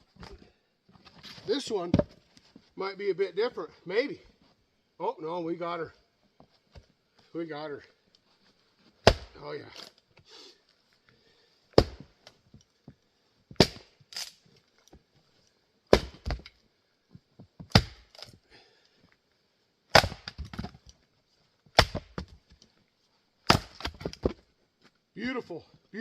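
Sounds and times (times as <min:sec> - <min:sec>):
axe cracking into wood: 0:09.0 - 0:10.0, 0:11.8 - 0:12.1, 0:13.6 - 0:14.4, 0:15.9 - 0:16.6, 0:17.7 - 0:18.4, 0:19.9 - 0:20.8, 0:21.7 - 0:22.3, 0:23.4 - 0:24.4.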